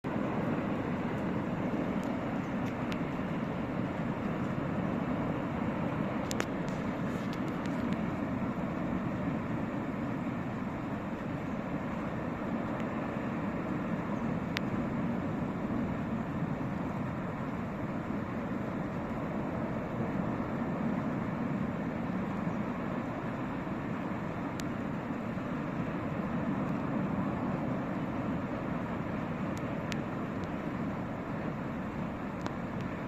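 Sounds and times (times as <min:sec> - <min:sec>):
rushing stream in flood: 0:00.0 - 0:33.0
faint sharp clicks: 0:02.0 - 0:03.1, 0:06.2 - 0:08.0, 0:14.5 - 0:14.7, 0:24.5 - 0:24.7, 0:29.5 - 0:30.6, 0:32.4 - 0:33.0.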